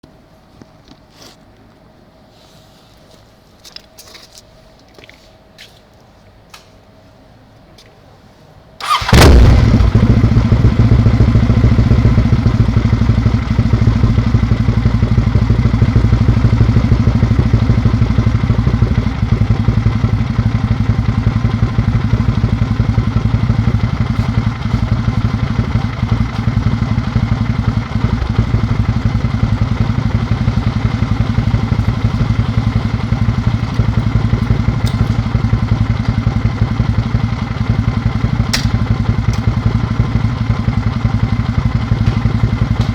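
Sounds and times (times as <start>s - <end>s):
motorcycle engine idling: 8.8s - 42.9s.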